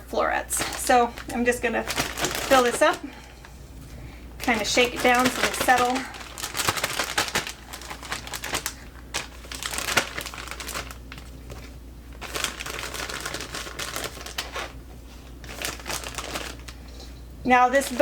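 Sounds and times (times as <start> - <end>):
plastic bag crinkling: 0.4 - 18.0
vegetables dropping into bag: 4.4 - 14.8.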